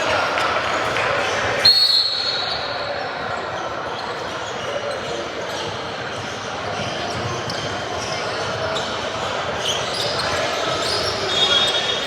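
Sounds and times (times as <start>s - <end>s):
referee's whistle blast: 1.6s - 2.7s.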